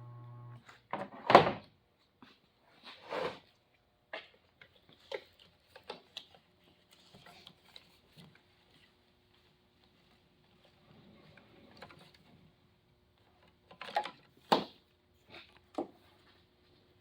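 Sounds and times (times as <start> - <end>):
faint steady hum: 0.0 - 0.6.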